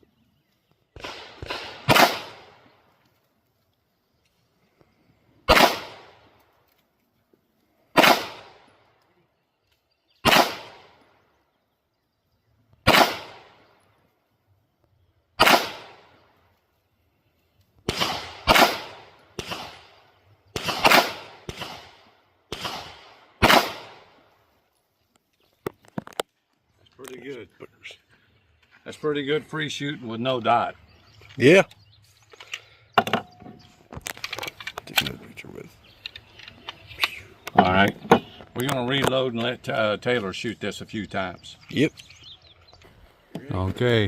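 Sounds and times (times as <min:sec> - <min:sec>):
pistol shots echoing: 0:01.0 - 0:02.6, 0:05.5 - 0:06.3, 0:07.9 - 0:08.7, 0:10.2 - 0:11.0, 0:12.8 - 0:13.6, 0:15.4 - 0:16.2, 0:17.9 - 0:24.2.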